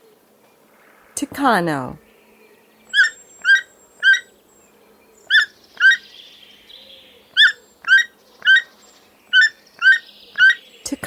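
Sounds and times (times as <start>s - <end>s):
toucan calling: 2.8s - 4.4s, 5.2s - 10.7s.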